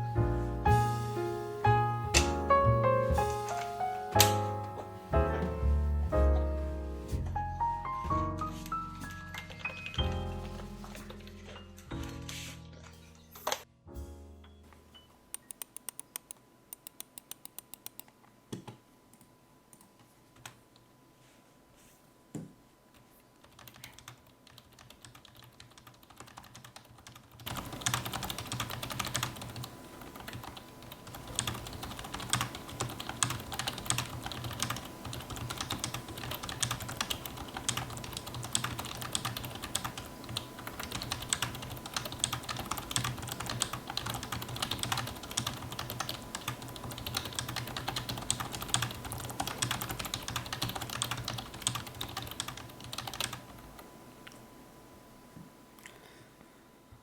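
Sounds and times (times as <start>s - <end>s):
keyboard typing: 3.4s - 5.6s, 8.5s - 13.7s, 23.4s - 53.8s.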